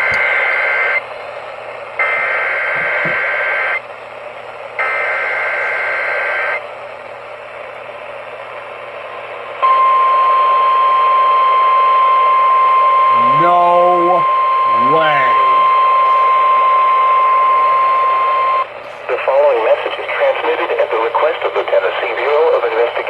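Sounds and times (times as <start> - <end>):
radio static hiss: 0.0 - 9.6, 13.0 - 23.0
steady attention tone: 2.0 - 3.9, 9.6 - 18.7.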